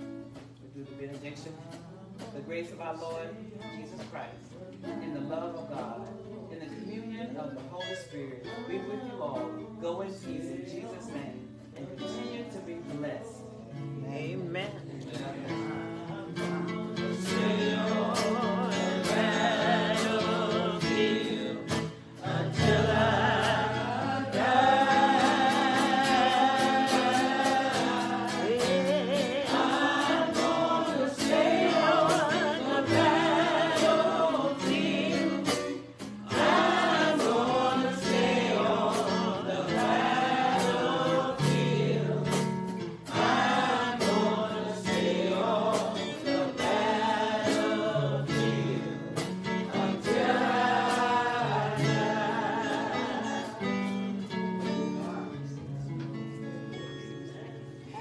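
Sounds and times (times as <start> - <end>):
gospel choir singing: 14.8 - 58.0.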